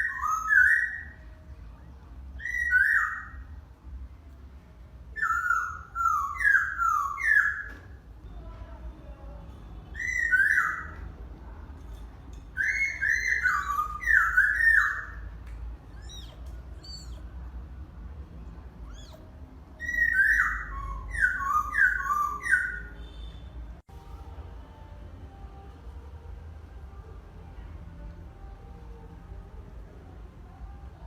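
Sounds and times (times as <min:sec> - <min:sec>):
high whistle-like calls: 0:19.8 - 0:23.5.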